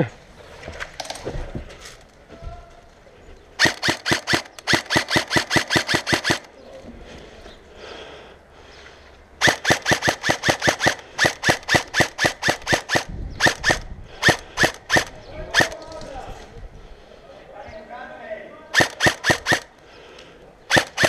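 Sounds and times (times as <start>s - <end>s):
airsoft gun rapid shots: 3.6s - 6.5s, 9.4s - 15.8s, 18.7s - 19.7s, 20.7s - 21.0s.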